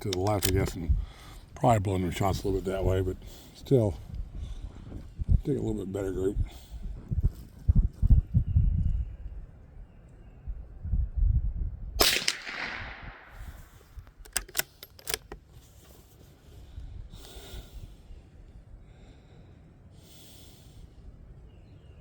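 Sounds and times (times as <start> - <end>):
rifle bolt metallic clicks: 0.0 - 0.9, 12.0 - 15.5
rifle shot with echo: 12.0 - 13.9.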